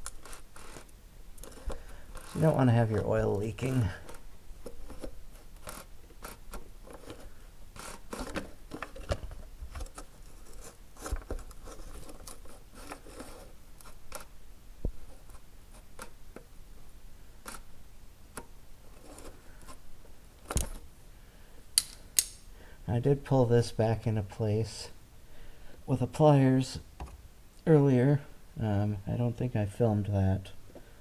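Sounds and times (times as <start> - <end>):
tools scraping: 0.0 - 9.2, 9.8 - 14.3, 18.9 - 19.8, 21.8 - 22.5
hand tools clicking and tapping: 21.8 - 22.5.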